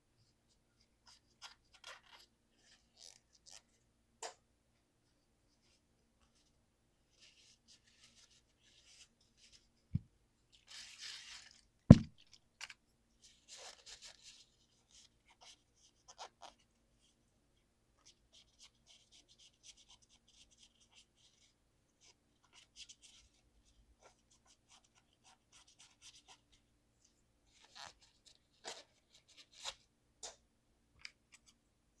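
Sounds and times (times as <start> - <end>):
sharp knocks: 11.9 - 12.1.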